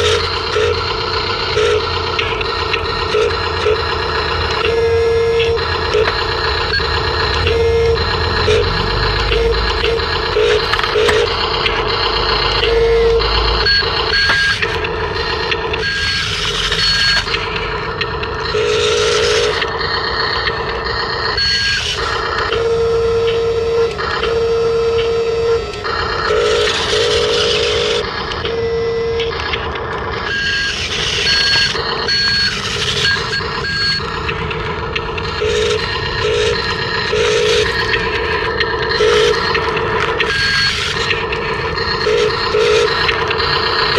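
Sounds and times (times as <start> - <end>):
whir of small electric motors: 0.0 - 43.9
electronic beeping tones: 1.5 - 14.8, 15.7 - 17.6, 21.3 - 29.5, 30.2 - 34.2, 35.2 - 43.9.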